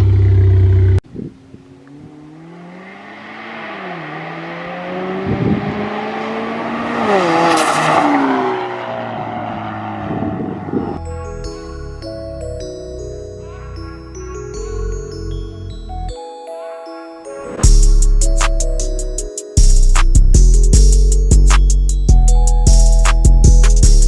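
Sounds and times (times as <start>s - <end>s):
car engine at full throttle passing: 0.0s - 11.0s.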